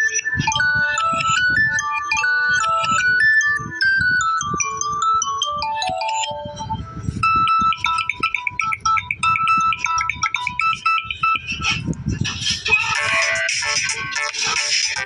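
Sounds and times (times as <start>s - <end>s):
ringtone of quick high notes: 0.0s - 11.9s
bell-like ringtone melody: 0.0s - 12.0s, 12.6s - 14.4s.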